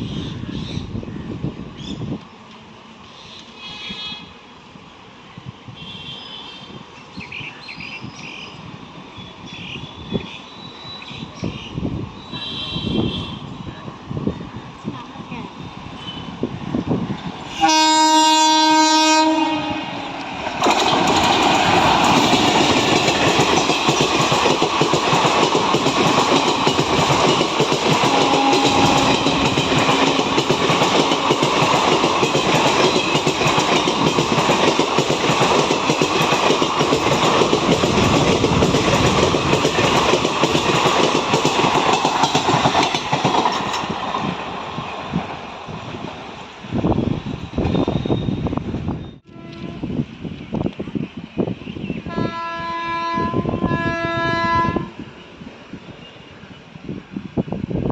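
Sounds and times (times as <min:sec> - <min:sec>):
locomotive horn: 0:03.6 - 0:04.4, 0:05.8 - 0:06.7, 0:12.4 - 0:13.6, 0:17.5 - 0:20.1, 0:28.0 - 0:30.2, 0:49.2 - 0:50.0, 0:52.0 - 0:55.0
train wheels clattering over rail joints: 0:20.2 - 0:45.5.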